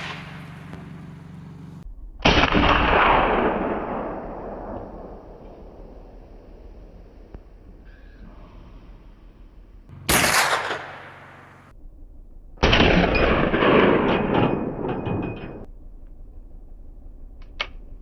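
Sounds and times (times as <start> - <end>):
rifle shots: 0.0 - 1.2, 2.2 - 5.0, 9.9 - 11.7.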